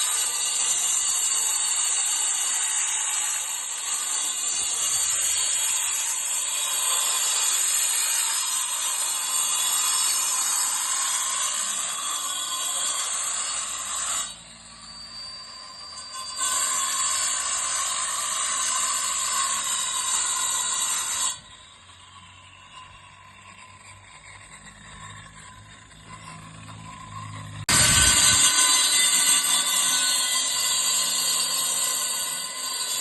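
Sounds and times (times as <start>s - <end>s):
power tool running: 24.6s - 33.0s.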